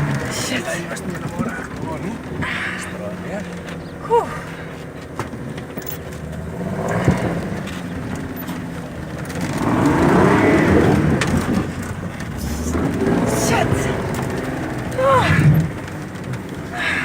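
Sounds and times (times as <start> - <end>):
off-road vehicle engine climbing: 0.0 - 17.0
passenger yelping: 0.0 - 17.0
vehicle knocking over terrain: 0.0 - 17.0.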